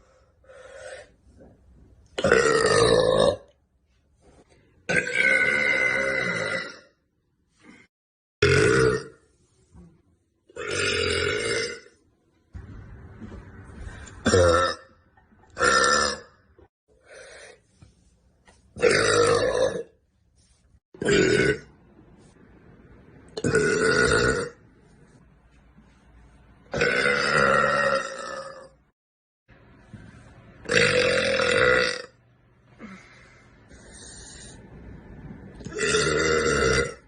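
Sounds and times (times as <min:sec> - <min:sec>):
woman belching: 0:02.2 - 0:03.5, 0:08.4 - 0:09.2, 0:10.6 - 0:11.9, 0:23.4 - 0:24.6, 0:30.6 - 0:32.2, 0:35.6 - 0:37.0.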